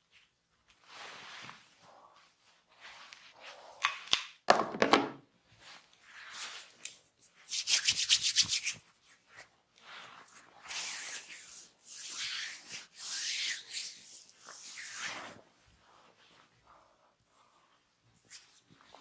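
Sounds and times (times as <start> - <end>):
hands rubbing and scratching: 5.6 - 19.0.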